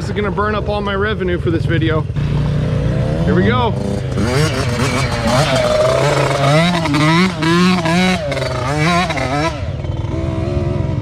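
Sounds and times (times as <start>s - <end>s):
dirt bike engine revving: 1.6s - 11.0s.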